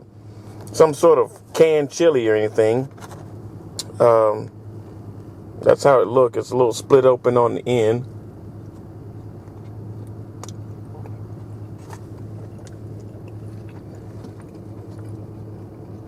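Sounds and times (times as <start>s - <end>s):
car engine idling: 0.0s - 16.0s
clicks and rustles from food: 11.8s - 16.0s.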